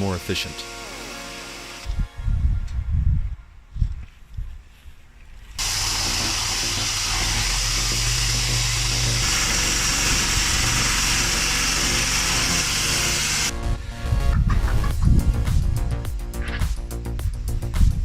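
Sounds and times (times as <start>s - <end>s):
engine running: 5.6s - 13.9s
loud even hiss: 5.6s - 13.9s.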